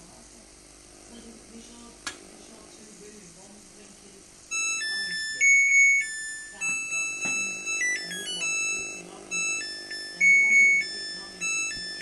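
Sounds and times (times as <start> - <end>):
washing machine chime melody: 4.5 - 12.0.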